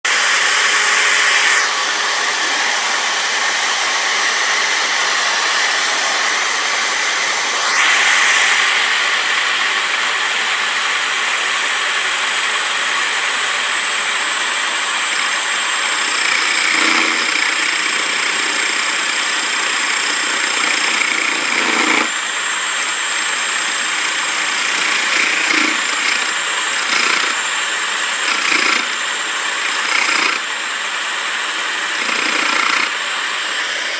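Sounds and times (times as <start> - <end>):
electric drill motor whining: 0.1 - 33.9.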